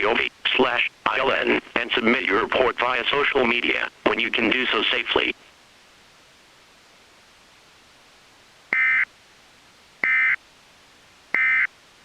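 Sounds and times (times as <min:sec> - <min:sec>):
digital data tone bursts: 0:08.8 - 0:09.1, 0:11.4 - 0:11.7.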